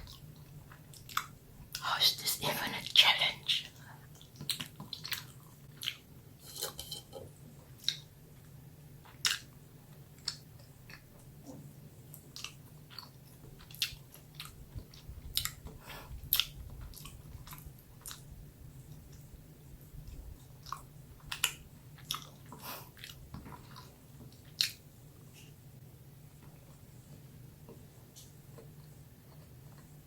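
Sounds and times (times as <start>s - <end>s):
chewing and biting: 0.0s - 1.4s, 4.2s - 6.0s, 12.1s - 18.3s, 20.1s - 24.8s.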